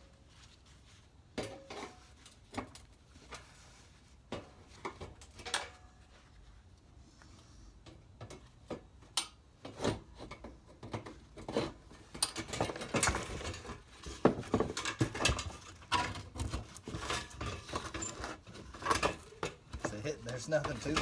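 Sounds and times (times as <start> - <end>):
metal parts and tools clanking: 12.2 - 21.0.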